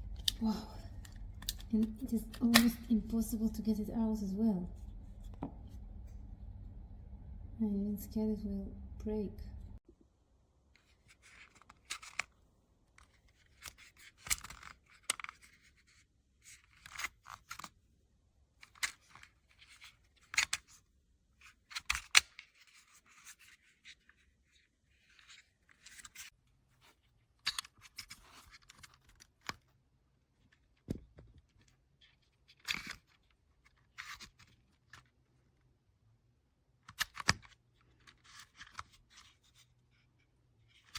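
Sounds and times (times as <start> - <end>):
plastic adapter clicks and scrapes: 0.1 - 2.9, 11.1 - 12.4, 13.0 - 15.7, 21.6 - 23.9, 32.5 - 35.1, 36.8 - 39.7.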